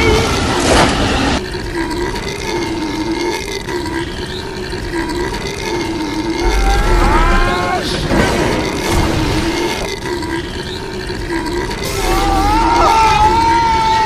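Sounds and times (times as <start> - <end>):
cartoon belch: 1.4 - 7.5, 8.5 - 12.1.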